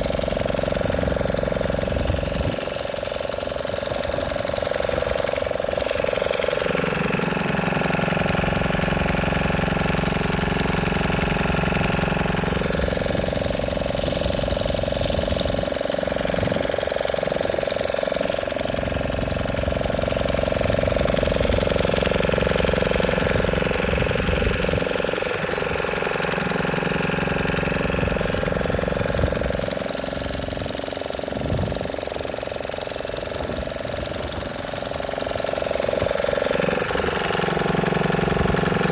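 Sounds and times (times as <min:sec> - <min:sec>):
motorboat engine running: 0:00.0 - 0:38.9.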